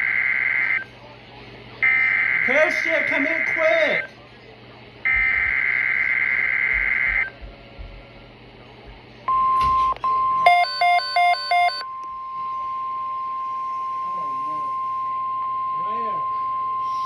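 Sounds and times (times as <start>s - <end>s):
steady warning alarm tone: 0.0s - 0.9s, 1.8s - 4.1s, 5.1s - 7.4s, 9.3s - 17.0s
screeching data burst: 1.8s - 4.1s.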